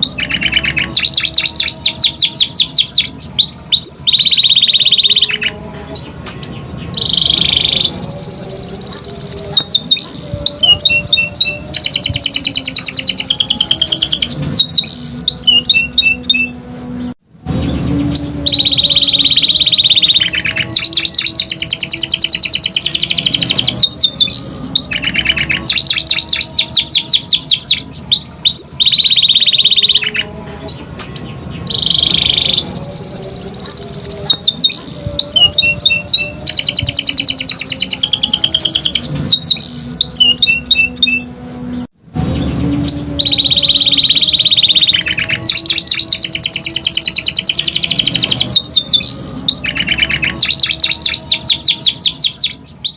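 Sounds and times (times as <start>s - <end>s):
canary singing trills: 0.0s - 52.9s.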